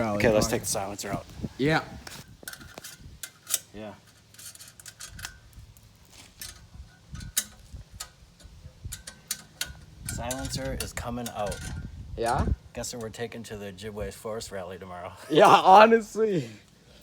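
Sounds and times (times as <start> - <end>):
metallic tool clicks and clinks: 7.2 - 11.8.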